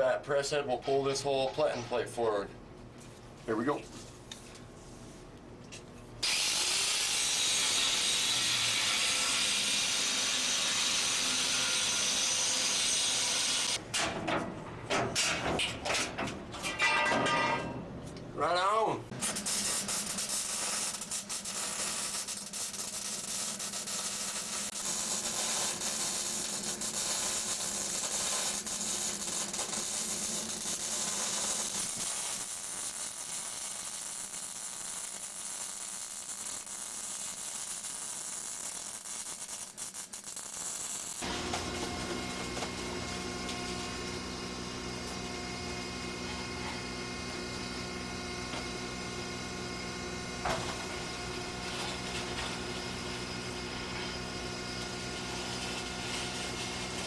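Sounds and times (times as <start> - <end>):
steel cutting hiss and crackle: 6.2 - 13.8, 19.1 - 42.9.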